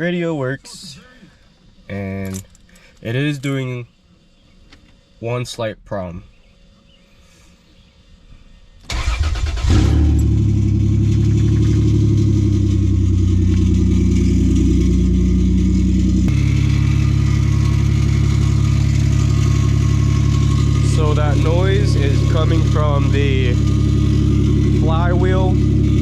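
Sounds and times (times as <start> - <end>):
car engine starter cranking: 8.8 - 12.1
car engine idling: 8.9 - 26.0.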